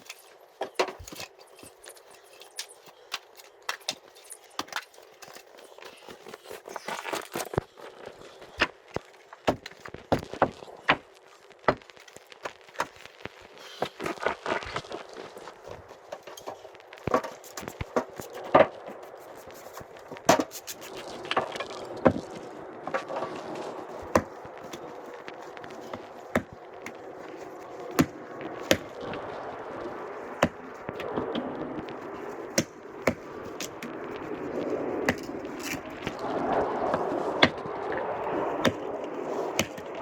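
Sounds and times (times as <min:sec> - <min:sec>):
firewood logs knocking: 0:09.4 - 0:11.0, 0:25.8 - 0:27.0, 0:39.6 - 0:39.9.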